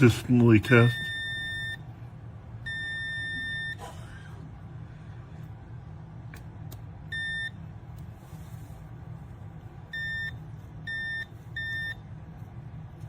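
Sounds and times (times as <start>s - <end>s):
steady low hum: 0.0s - 13.0s
multimeter short high beeps: 0.7s - 1.8s, 2.7s - 3.8s, 7.1s - 7.6s, 10.0s - 12.0s.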